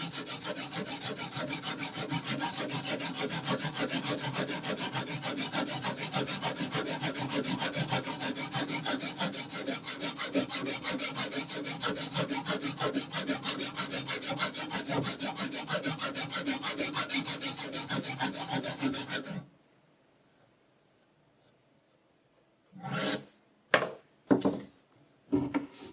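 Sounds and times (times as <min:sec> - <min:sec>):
knife rasping on sharpening stone: 0:00.0 - 0:19.4, 0:22.8 - 0:23.3.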